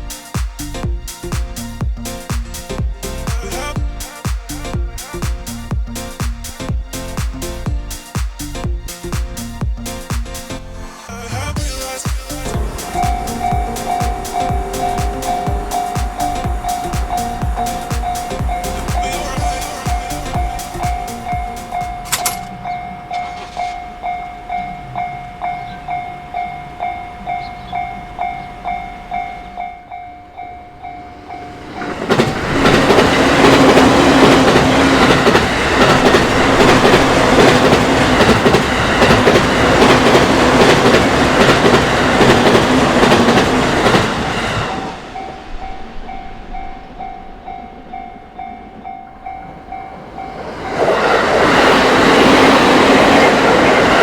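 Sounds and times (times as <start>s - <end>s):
train wheels clattering over rails: 12.6s - 24.0s, 31.7s - 45.5s
level-crossing alarm bell ringing: 12.6s - 32.0s, 33.0s - 51.1s.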